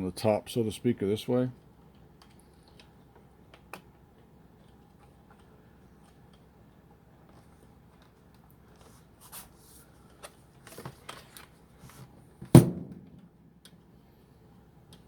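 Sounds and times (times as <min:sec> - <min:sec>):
loud ringing knock: 0:12.6 - 0:13.0.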